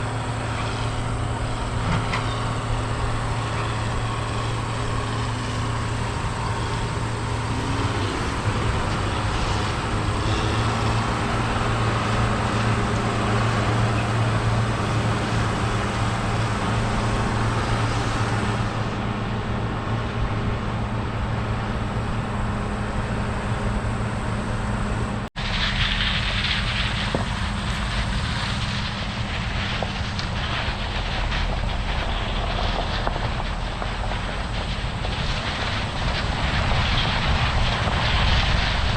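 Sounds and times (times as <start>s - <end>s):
diesel machinery engine drone: 0.0s - 38.9s.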